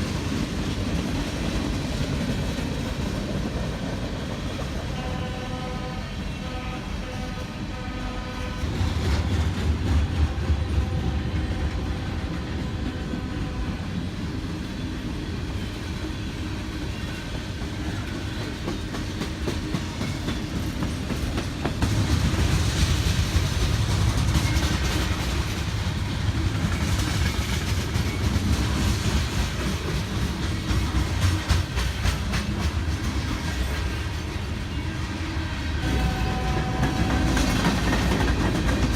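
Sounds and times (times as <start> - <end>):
train rumbling past: 0.0 - 38.9.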